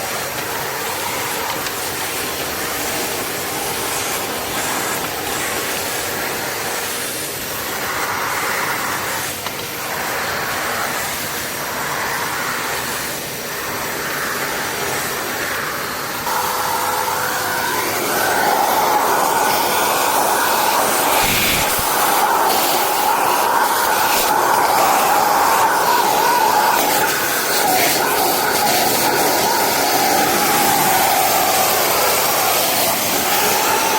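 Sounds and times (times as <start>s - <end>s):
vacuum cleaner rushing air: 0.0s - 33.9s.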